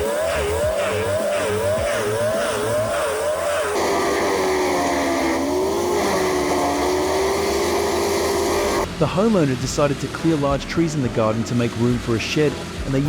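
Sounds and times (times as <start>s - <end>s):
machine running low note: 0.0s - 11.2s
wood chipper engine: 0.0s - 13.0s.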